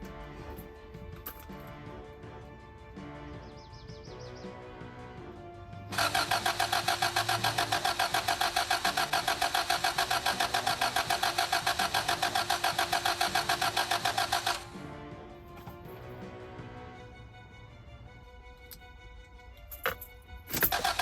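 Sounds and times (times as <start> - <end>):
engine cranking on starter: 5.9 - 14.8, 20.6 - 21.0.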